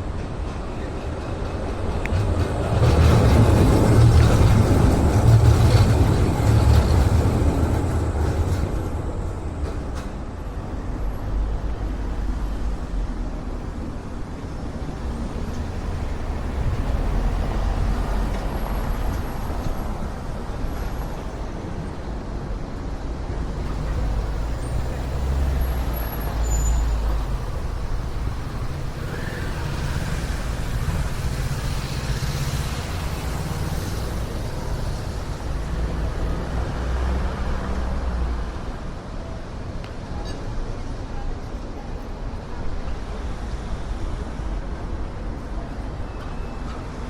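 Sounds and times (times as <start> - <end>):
wind rumbling on microphone: 0.0 - 20.6.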